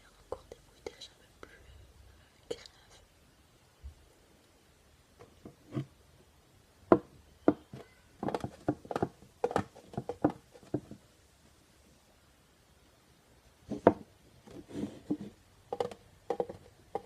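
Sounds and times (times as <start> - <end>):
plastic containers tapped and handled: 5.2 - 5.9, 6.9 - 11.1, 13.7 - 17.0.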